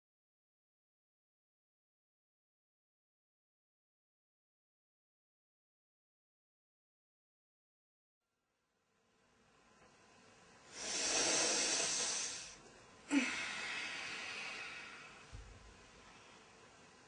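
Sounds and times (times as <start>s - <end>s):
person exhaling sigh: 10.7s - 15.3s
person inhaling deeply: 10.7s - 15.3s.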